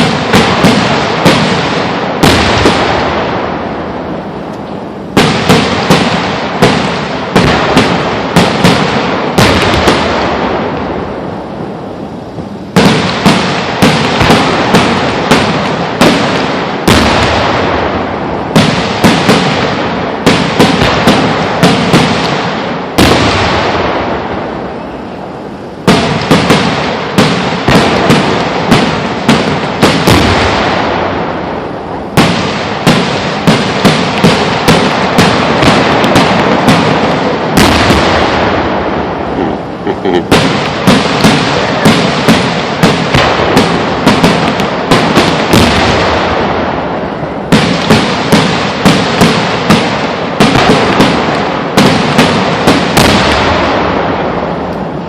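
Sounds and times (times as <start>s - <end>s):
fireworks bangs: 0.0s - 55.0s.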